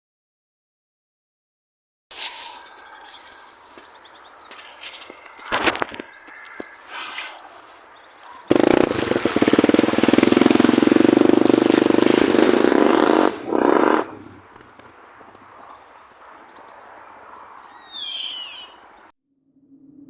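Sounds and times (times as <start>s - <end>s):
dirt bike engine running: 7.5s - 17.1s.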